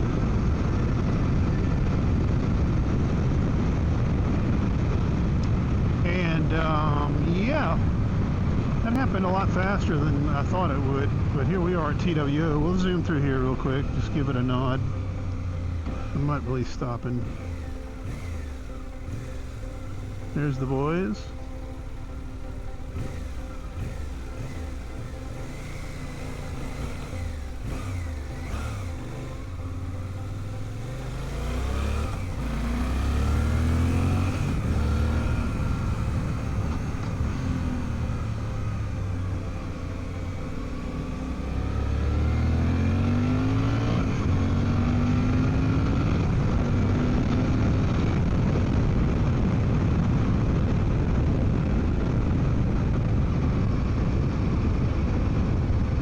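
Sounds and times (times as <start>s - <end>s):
wind noise: 0.0s - 12.8s, 41.6s - 56.0s
motorcycle engine accelerating: 0.0s - 56.0s.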